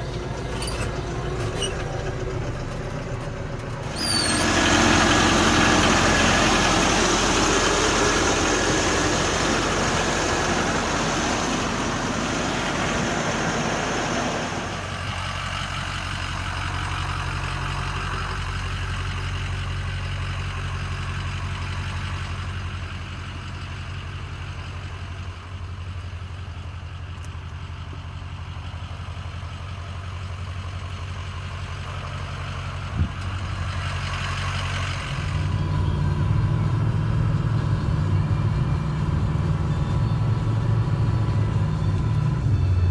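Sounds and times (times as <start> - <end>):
engine running: 0.0 - 42.9.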